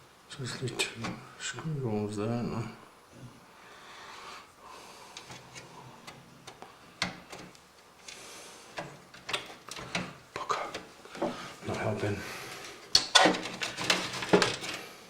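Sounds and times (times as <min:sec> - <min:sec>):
clicks of metal computer parts: 0:12.9 - 0:14.8.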